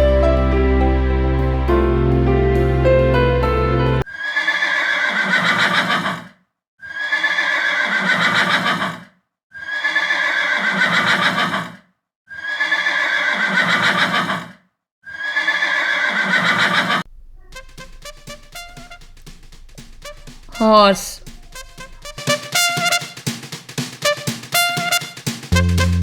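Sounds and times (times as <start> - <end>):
horse neighing: 4.1 - 6.3, 6.9 - 17.0.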